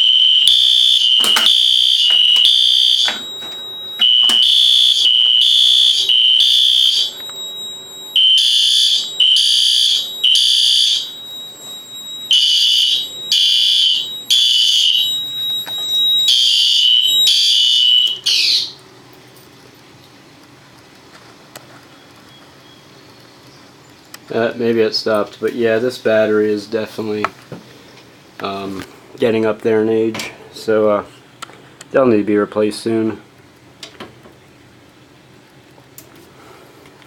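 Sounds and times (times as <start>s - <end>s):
fire alarm beeping: 0.0s - 18.8s.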